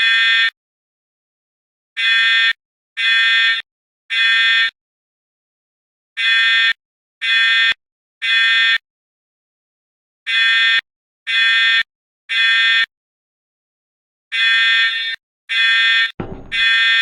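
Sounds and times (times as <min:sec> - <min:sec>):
fire alarm buzzing beeps: 0:14.3 - 0:17.0.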